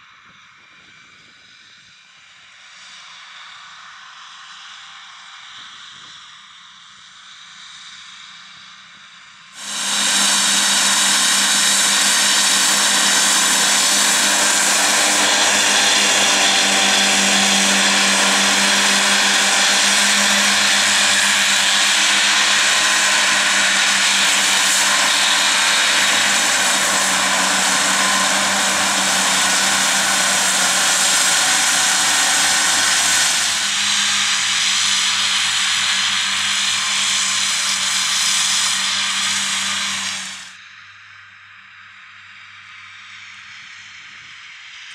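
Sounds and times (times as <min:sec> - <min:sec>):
tractor with mowers droning: 0:09.6 - 0:44.9.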